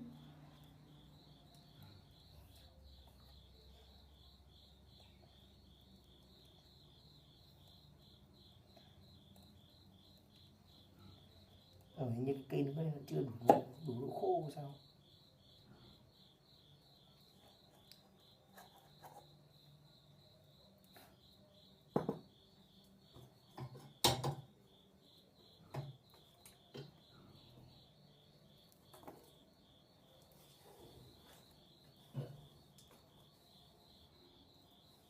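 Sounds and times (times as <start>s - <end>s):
cricket chirping trill: 0.0s - 35.0s
tools knocking and clattering: 23.5s - 24.5s.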